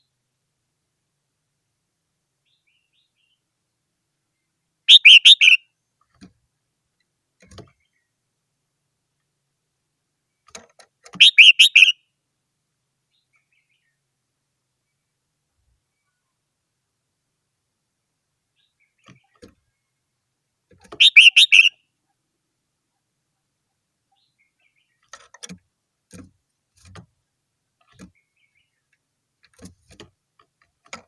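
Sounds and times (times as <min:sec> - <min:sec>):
bulbul singing: 0:04.9 - 0:05.7, 0:11.1 - 0:12.1, 0:20.8 - 0:21.9.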